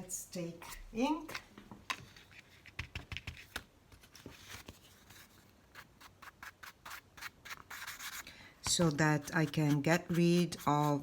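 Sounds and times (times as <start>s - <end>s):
soft rubbing of paper: 4.0s - 8.2s.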